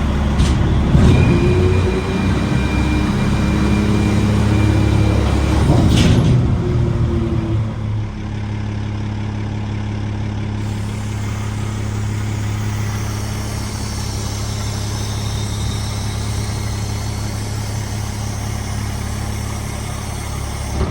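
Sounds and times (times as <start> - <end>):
garbage truck engine idling: 0.0 - 20.9.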